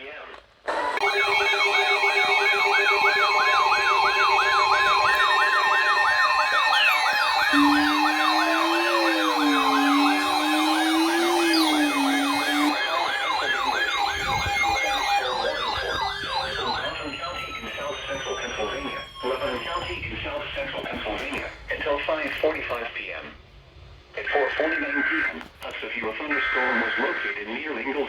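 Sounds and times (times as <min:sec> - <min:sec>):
steady alert tones: 0:01.0 - 0:20.5
electronic siren warbling: 0:01.0 - 0:20.8
low wavering tone: 0:06.1 - 0:20.9.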